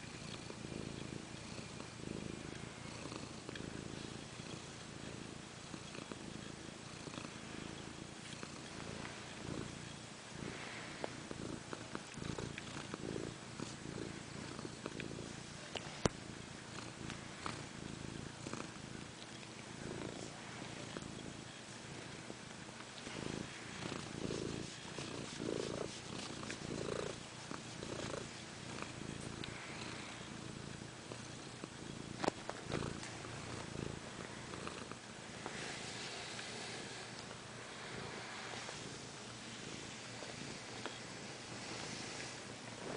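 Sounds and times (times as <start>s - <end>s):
pet snoring: 0.0s - 16.2s, 19.8s - 22.4s, 23.0s - 42.9s.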